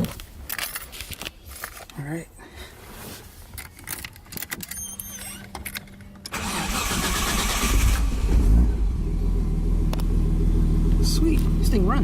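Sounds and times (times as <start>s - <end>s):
car engine idling: 6.3s - 12.0s.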